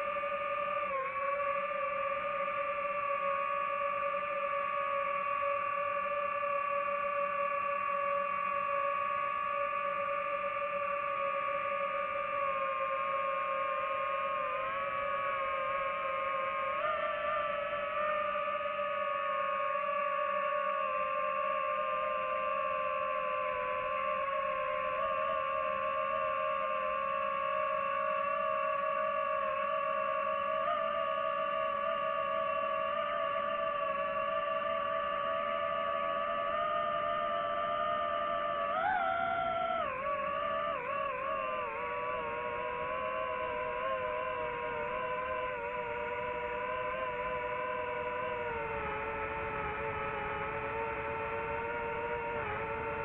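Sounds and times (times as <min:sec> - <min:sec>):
drone propellers whining: 0:14.2 - 0:53.0.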